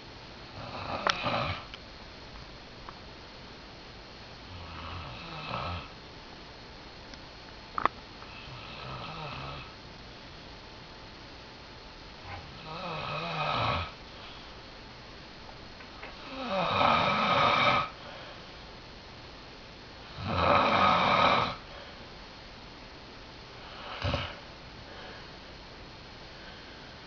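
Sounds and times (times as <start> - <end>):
person snoring: 0.6 - 1.7, 4.5 - 5.9, 8.3 - 9.7, 12.4 - 14.3, 16.2 - 18.0, 20.1 - 21.6, 23.6 - 25.3.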